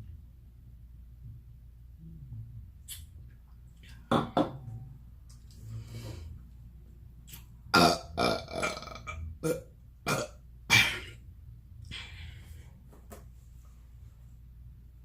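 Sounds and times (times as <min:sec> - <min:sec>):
person burping: 0:07.7 - 0:11.2.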